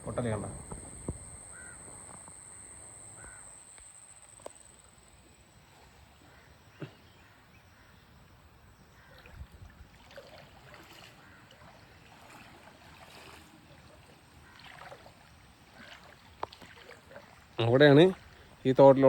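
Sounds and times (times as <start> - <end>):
sharp click: 0.0 - 5.0
water splashing in a stream: 9.2 - 18.4.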